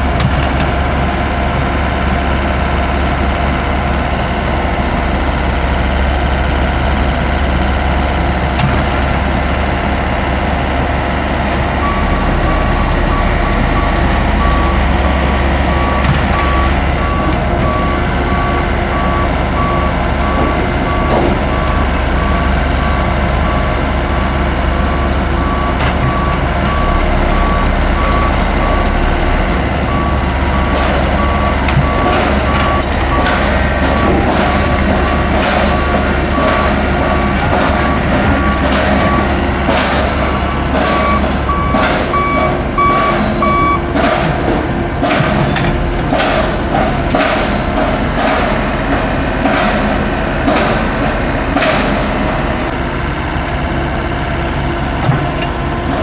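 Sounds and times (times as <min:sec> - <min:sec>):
diesel engine running: 0:00.0 - 0:56.0
reversing alarm beeping: 0:07.0 - 0:46.8
metal knocks and clanks: 0:30.6 - 0:50.9.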